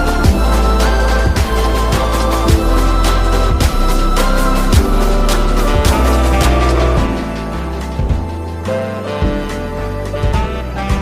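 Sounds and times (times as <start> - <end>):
music with heavy bass and beat: 0.0 - 11.0.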